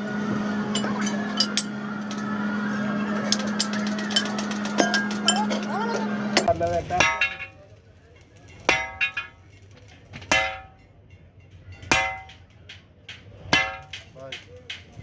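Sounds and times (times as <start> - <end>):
hammer striking steel spring: 6.4 - 7.6, 8.5 - 9.5, 10.1 - 10.9, 11.8 - 15.0.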